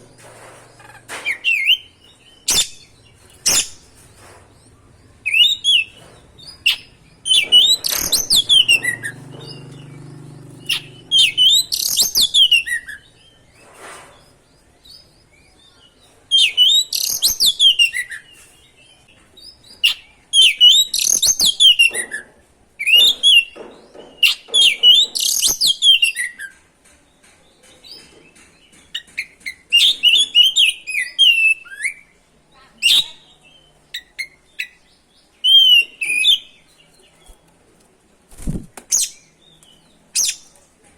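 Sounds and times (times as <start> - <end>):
bird singing whistled phrases: 35.4 - 36.5.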